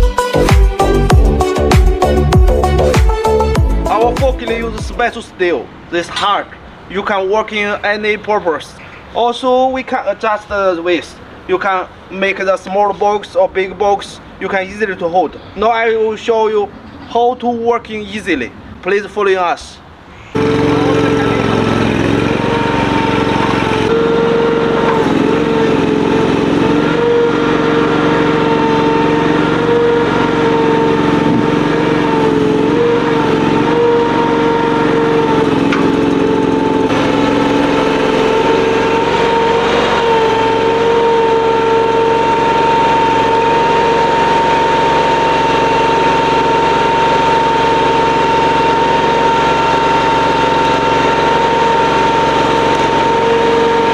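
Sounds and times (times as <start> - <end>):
loader engine running: 0.0 - 8.4, 19.9 - 53.9.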